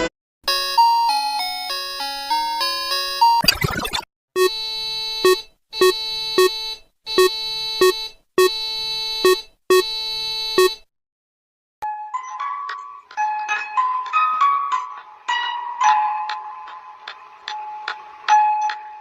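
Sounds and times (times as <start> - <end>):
synthesized emergency alert tone: 3.0 - 10.8.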